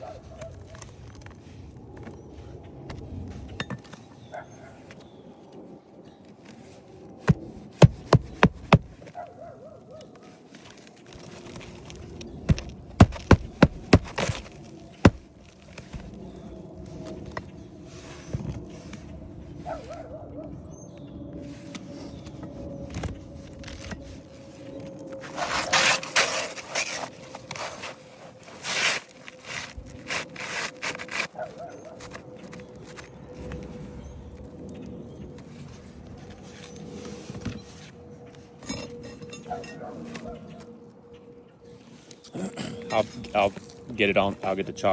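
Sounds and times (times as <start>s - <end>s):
sharp knocks on wood: 7.3s - 9.0s
scraping on wood: 7.3s - 9.2s, 11.1s - 16.2s.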